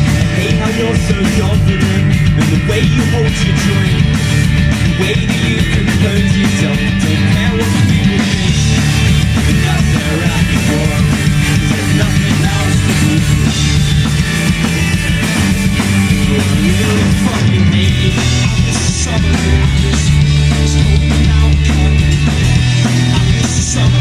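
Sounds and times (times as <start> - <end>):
drum kit: 0.0 - 24.0
guitars: 0.0 - 24.0
punk rock band playing: 0.0 - 24.0.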